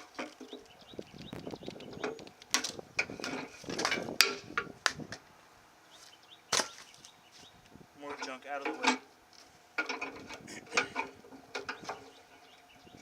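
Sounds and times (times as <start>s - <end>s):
clicks and clatter of tools: 8.1s - 12.0s.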